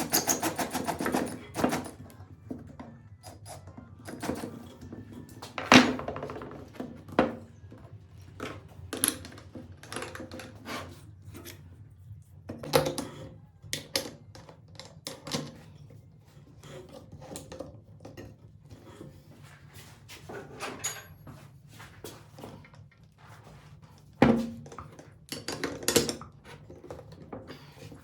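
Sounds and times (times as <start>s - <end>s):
wood and tools knocking: 4.1s - 10.8s.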